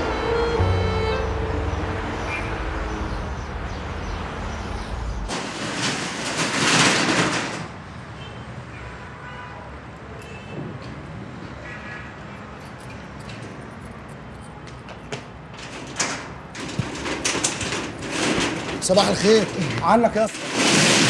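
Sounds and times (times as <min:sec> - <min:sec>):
vehicle passing close by: 0:00.0 - 0:05.3
street traffic rumble: 0:00.0 - 0:21.0.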